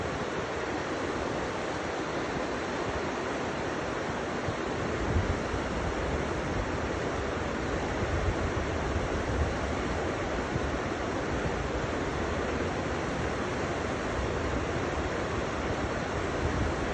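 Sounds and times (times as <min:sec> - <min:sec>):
river water rushing: 0:00.0 - 0:16.9.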